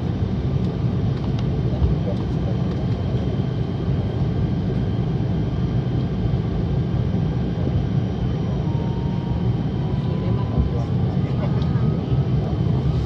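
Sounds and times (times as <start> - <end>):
airliner cabin engine drone: 0.0 - 13.0.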